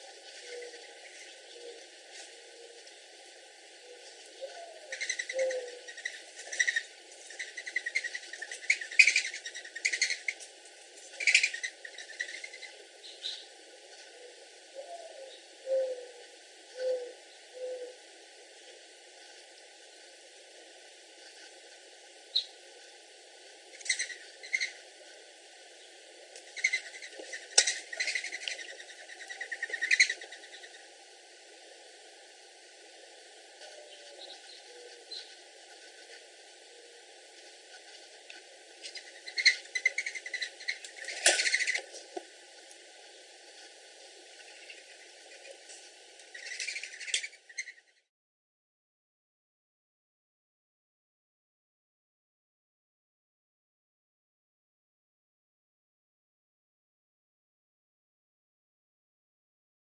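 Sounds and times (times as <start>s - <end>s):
dove cooing: 0.0s - 2.9s, 3.7s - 10.4s, 11.1s - 18.1s, 33.6s - 42.1s
dove wings whistling: 0.3s - 2.8s, 3.8s - 10.4s
dove whistling calls: 0.4s - 2.8s, 3.8s - 10.4s, 14.1s - 18.0s, 26.5s - 30.8s, 33.6s - 35.3s.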